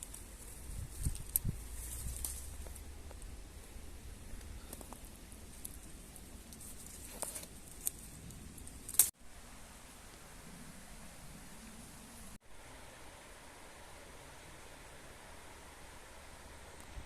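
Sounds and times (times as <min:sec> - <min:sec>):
handling clicks and rustles: 0:00.0 - 0:09.1
faint steady hiss: 0:00.0 - 0:17.0.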